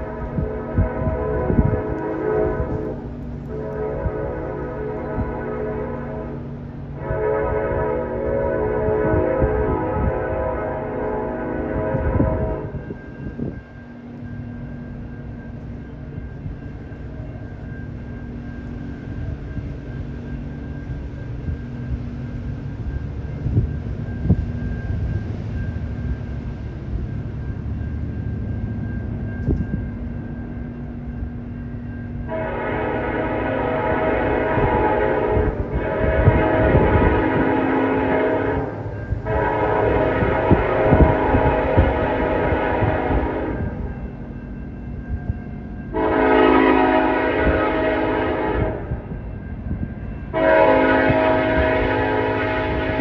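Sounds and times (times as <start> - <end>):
locomotive horn blast: 0.0 - 13.5, 32.2 - 44.0, 45.9 - 49.1, 50.3 - 53.0
low rumble of train: 0.0 - 53.0
wind buffeting microphone: 0.0 - 53.0.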